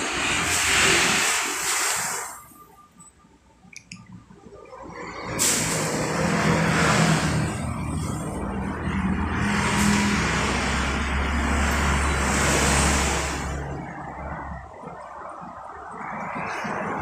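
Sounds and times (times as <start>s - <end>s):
dense hissing through speakers: 0.0s - 2.5s.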